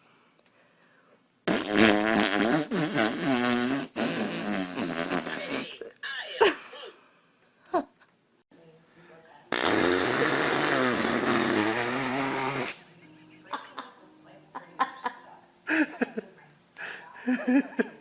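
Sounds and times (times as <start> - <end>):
long fart sound: 1.4 - 5.8, 9.5 - 12.8.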